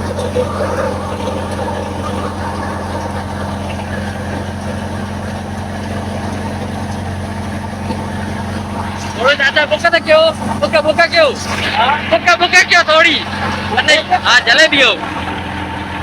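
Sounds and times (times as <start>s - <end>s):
thresher machine droning: 0.0s - 16.0s.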